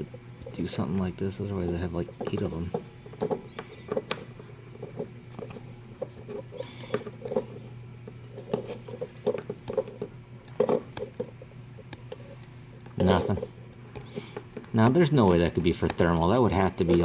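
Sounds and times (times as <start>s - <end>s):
scratching and scraping: 8.3s - 14.4s.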